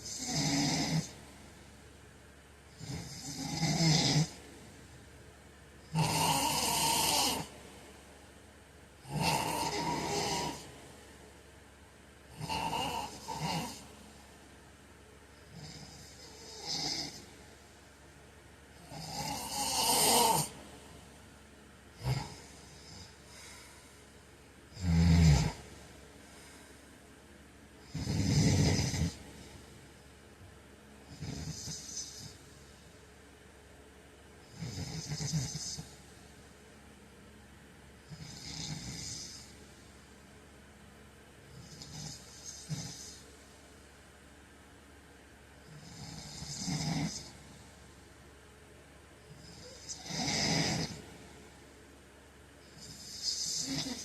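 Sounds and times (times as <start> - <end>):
man snoring: 0.0 - 1.3, 2.7 - 4.5, 5.8 - 7.6, 9.0 - 10.8, 12.3 - 14.2, 15.5 - 17.4, 18.7 - 20.6, 22.0 - 23.8, 24.7 - 25.7, 27.8 - 29.6, 31.0 - 32.5, 34.4 - 36.0, 38.1 - 39.7, 41.5 - 43.2, 45.7 - 47.6, 49.3 - 51.3, 52.6 - 54.0.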